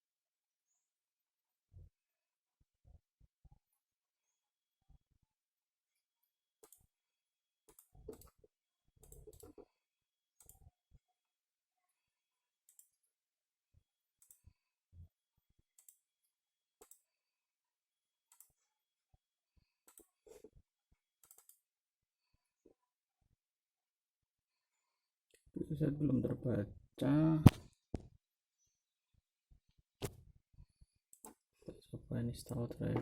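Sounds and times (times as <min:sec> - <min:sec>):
computer mouse clicks: 0:06.6 - 0:06.9, 0:07.7 - 0:08.4, 0:09.0 - 0:09.7, 0:10.4 - 0:10.6, 0:12.6 - 0:13.0, 0:14.2 - 0:14.4, 0:15.8 - 0:16.1, 0:16.8 - 0:17.1, 0:18.3 - 0:18.6, 0:19.8 - 0:20.4, 0:21.2 - 0:21.7, 0:31.1 - 0:31.4.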